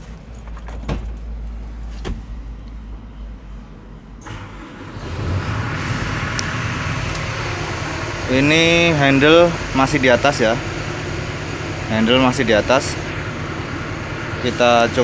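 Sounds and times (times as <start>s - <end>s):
excavator diesel engine running: 4.2s - 15.0s.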